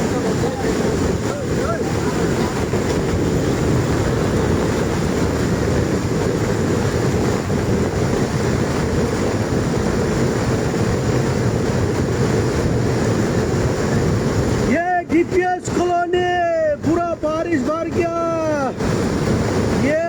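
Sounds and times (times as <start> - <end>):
floodwater rushing: 0.0 - 20.0.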